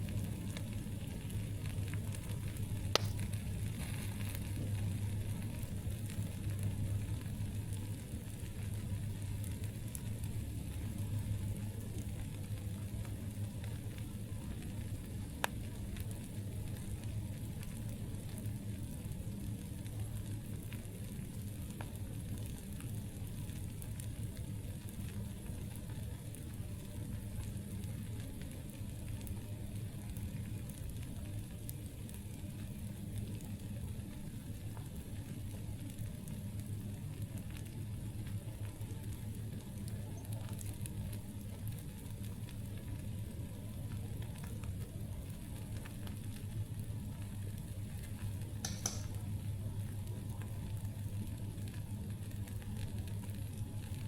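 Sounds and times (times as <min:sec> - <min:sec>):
campfire rumble and hiss: 0:00.0 - 0:54.0
fire crackling: 0:00.0 - 0:54.0
sharp pop of fire: 0:02.9 - 0:03.9, 0:48.6 - 0:49.2.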